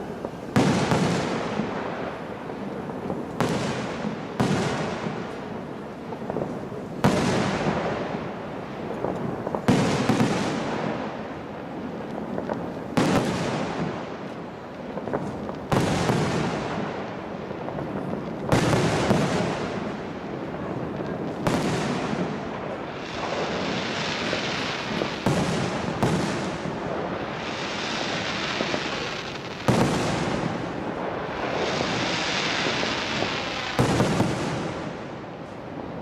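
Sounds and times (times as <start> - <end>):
fireworks crackling and hissing: 0.0 - 36.0
firework shells booming: 21.1 - 35.1.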